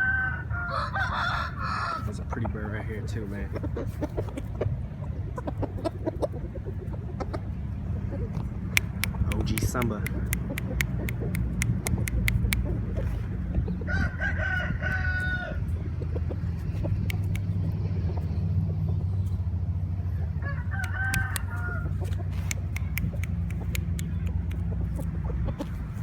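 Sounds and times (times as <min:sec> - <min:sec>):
roosters crowing: 0:00.0 - 0:02.3, 0:13.8 - 0:17.4, 0:20.2 - 0:24.4
sharp ticks: 0:08.8 - 0:12.7, 0:16.9 - 0:17.6, 0:20.8 - 0:24.7.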